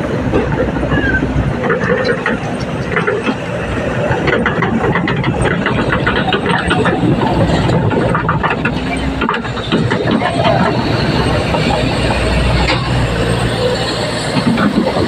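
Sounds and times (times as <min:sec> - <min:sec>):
excavator engine running: 0:00.0 - 0:15.0.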